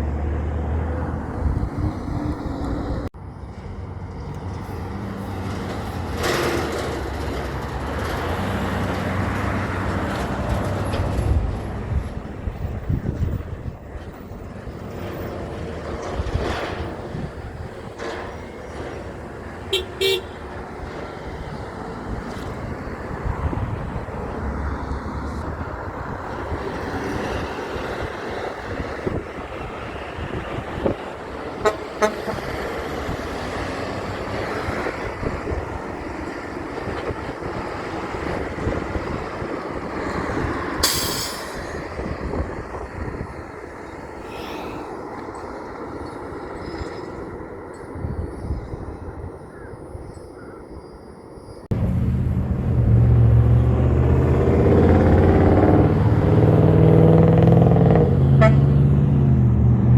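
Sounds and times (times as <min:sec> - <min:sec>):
heavy trucks passing: 0:00.0 - 0:50.2, 0:51.1 - 0:59.9
traffic noise: 0:00.0 - 0:59.9
truck horn toots: 0:19.7 - 0:20.6, 0:31.6 - 0:32.6, 0:58.0 - 0:58.9.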